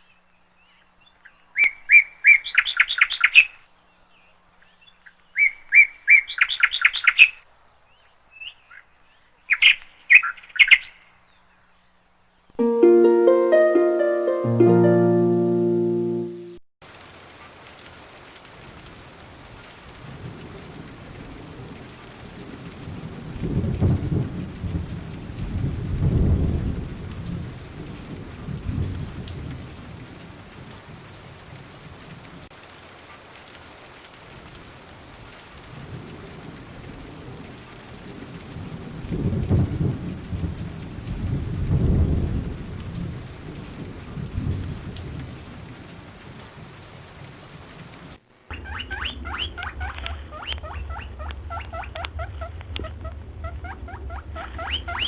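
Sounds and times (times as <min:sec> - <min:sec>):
steady rain falling: 0:12.0 - 0:55.0
thunder rumbling: 0:20.1 - 0:30.0, 0:37.0 - 0:45.4.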